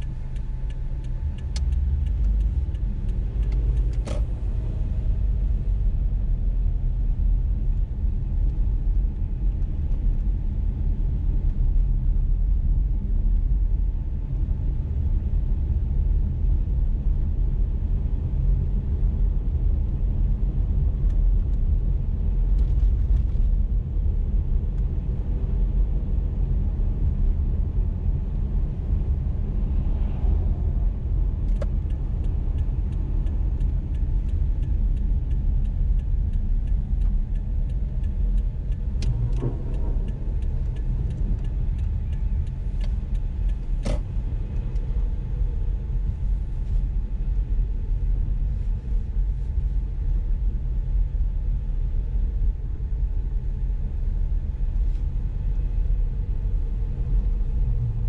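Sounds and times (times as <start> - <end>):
light regular ticking: 0.0 - 4.6, 31.5 - 44.9
car driving on road: 0.0 - 58.0.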